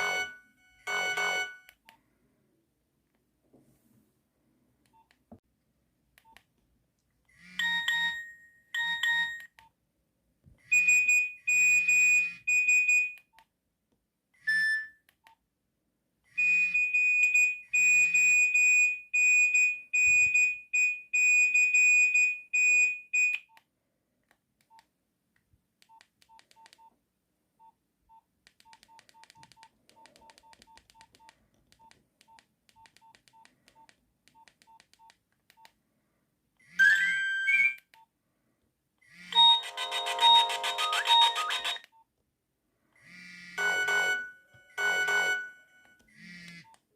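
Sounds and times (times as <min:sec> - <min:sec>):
phone alert beeps: 0:00.0 - 0:01.7, 0:07.6 - 0:09.5, 0:36.8 - 0:37.9, 0:39.3 - 0:42.0, 0:43.6 - 0:46.7.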